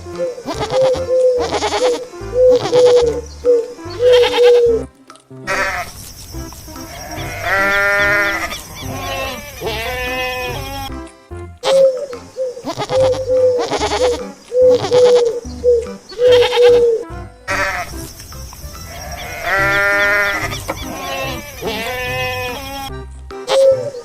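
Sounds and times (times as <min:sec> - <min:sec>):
goats bleating: 0:00.4 - 0:03.2, 0:04.0 - 0:04.7, 0:05.4 - 0:11.0, 0:12.6 - 0:15.4, 0:16.1 - 0:18.1, 0:18.7 - 0:23.8.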